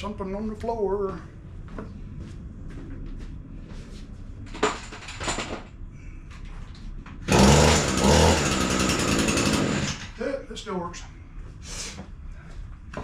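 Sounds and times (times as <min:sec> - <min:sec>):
string trimmer running: 0:07.3 - 0:10.1.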